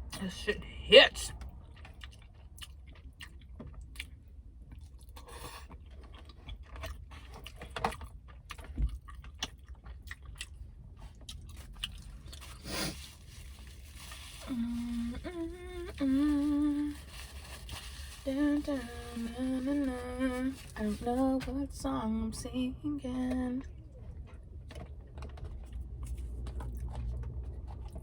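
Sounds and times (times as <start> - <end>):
chewing and mouth smacks: 1.3 - 12.6, 23.6 - 28.0
woman humming: 14.4 - 16.9.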